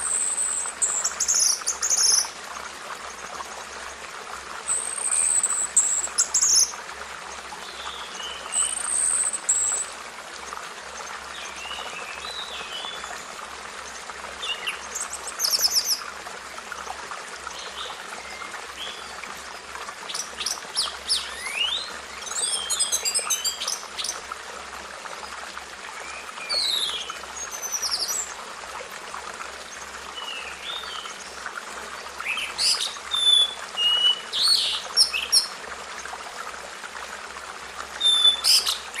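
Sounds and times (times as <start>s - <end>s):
birds calling and chirping: 20.0s - 24.2s, 26.4s - 28.3s, 32.2s - 35.5s, 38.0s - 39.0s.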